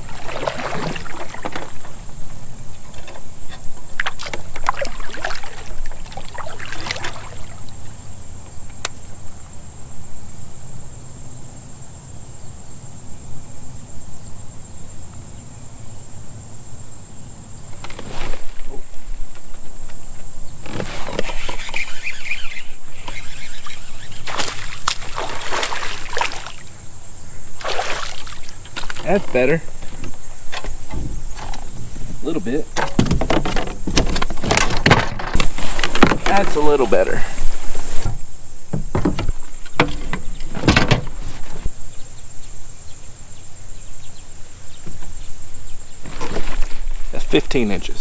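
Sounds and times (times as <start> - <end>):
fish thrashing in water: 0.0 - 8.1, 17.8 - 41.6
insects droning: 0.0 - 48.0.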